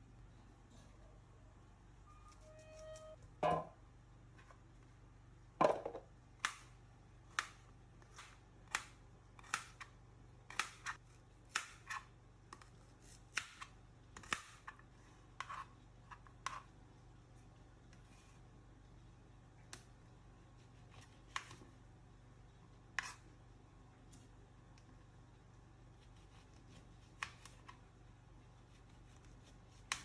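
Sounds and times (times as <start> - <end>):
faint low hum: 0.0 - 30.0.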